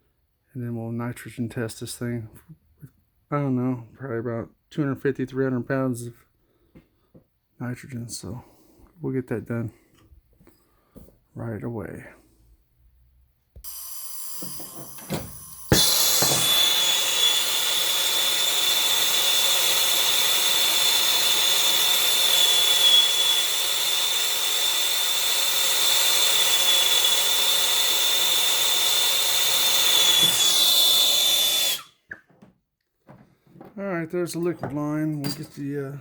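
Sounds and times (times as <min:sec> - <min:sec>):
brazing torch hissing: 0:15.0 - 0:32.0.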